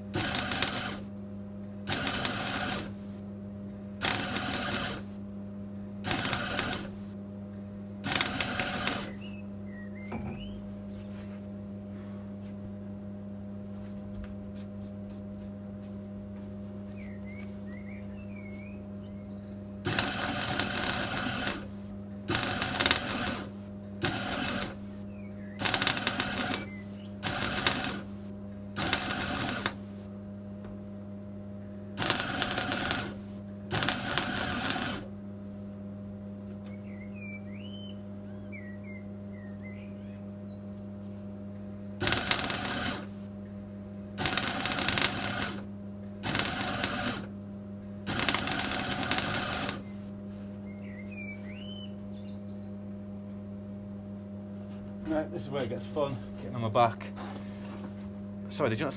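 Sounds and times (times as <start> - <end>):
welding arc crackling: 0.0 - 1.1, 1.9 - 3.2, 4.0 - 5.2, 6.0 - 7.2, 8.0 - 9.3, 19.8 - 25.0, 25.6 - 30.1, 32.0 - 35.1, 42.0 - 43.3, 44.2 - 47.3, 48.1 - 50.1
electrical hum: 0.0 - 58.9.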